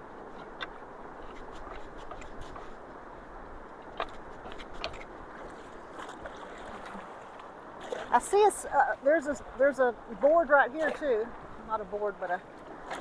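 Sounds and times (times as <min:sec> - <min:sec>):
creek water rushing into culvert: 0:05.0 - 0:13.0.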